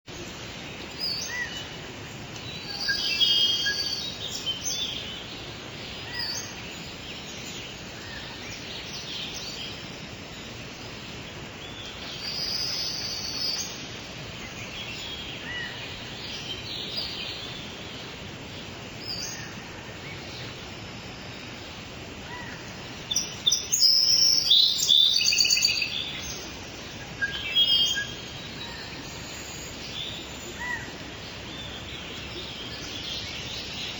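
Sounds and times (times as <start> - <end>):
birds calling and chirping: 0.1 - 33.9
forest background hiss: 0.1 - 33.9.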